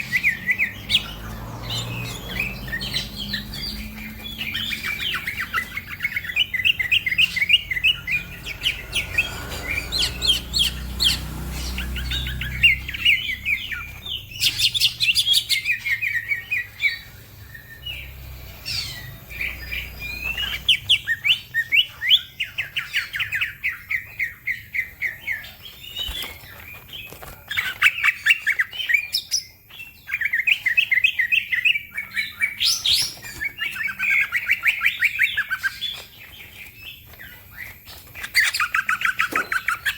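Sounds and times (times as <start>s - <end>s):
bird chirping rapidly: 0.0s - 39.9s
low hum: 6.8s - 14.8s.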